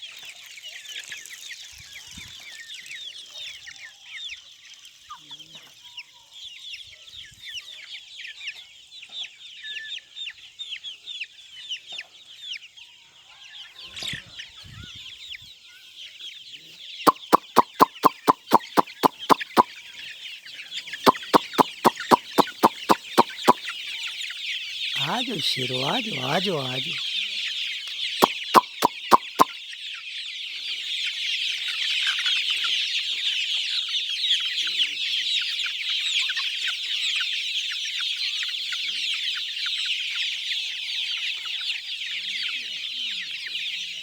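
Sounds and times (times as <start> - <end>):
hens clucking: 17.1 - 19.7, 21.1 - 23.6, 25.0 - 27.0, 28.2 - 29.5
rapid sharp knocks: 17.1 - 19.7, 21.1 - 23.6.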